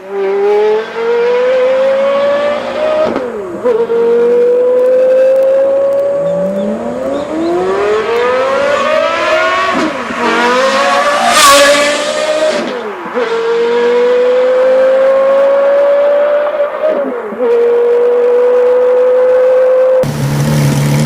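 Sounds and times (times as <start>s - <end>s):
car engine revving: 0.0s - 21.0s
loud rushing burst: 8.4s - 12.8s.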